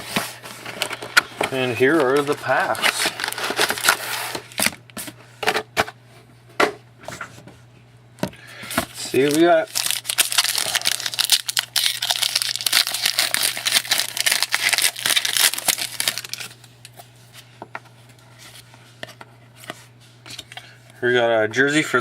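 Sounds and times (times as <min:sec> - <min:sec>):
card wrappers tearing and crinkling: 0:00.1 - 0:04.8, 0:09.0 - 0:17.0.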